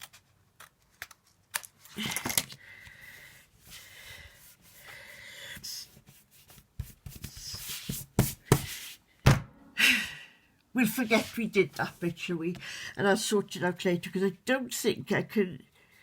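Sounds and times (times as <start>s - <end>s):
paper scraping strokes: 3.6s - 9.0s.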